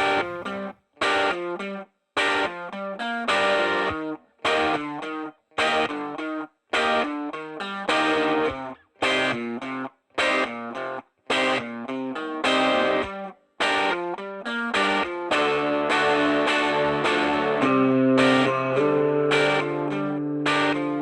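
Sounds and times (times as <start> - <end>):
distorted electric guitar phrases: 0.0 - 1.6, 2.2 - 21.0.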